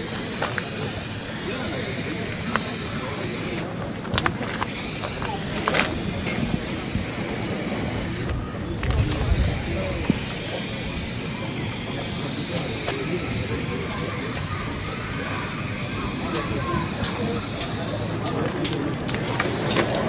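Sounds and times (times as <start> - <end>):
steady hiss: 9.0 - 18.2.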